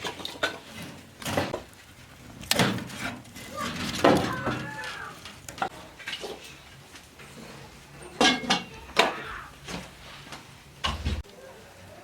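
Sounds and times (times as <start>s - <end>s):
pots and dishes clattering: 0.0s - 1.7s, 2.5s - 9.9s.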